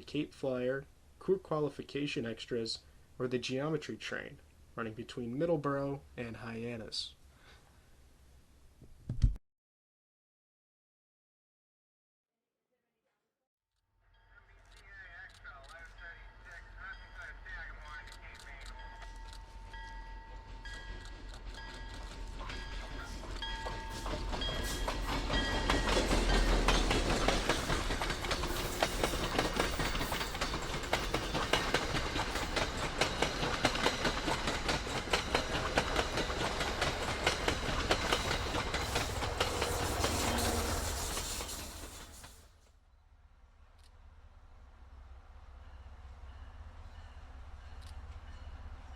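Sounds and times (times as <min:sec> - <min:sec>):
train passing close by: 0:15.9 - 0:42.6, 0:44.4 - 0:48.9
wheels clicking over rail joints: 0:20.5 - 0:42.4
train horn: 0:39.4 - 0:41.6.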